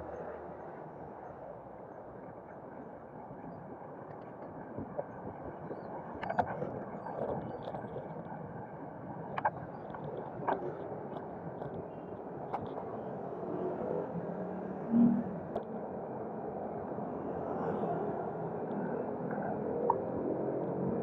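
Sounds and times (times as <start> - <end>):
road and wind noise: 8.0 - 21.0.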